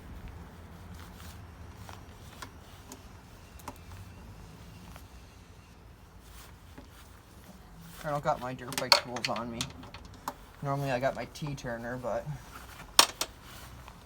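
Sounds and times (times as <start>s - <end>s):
hand tools clicking and tapping: 8.6s - 10.6s.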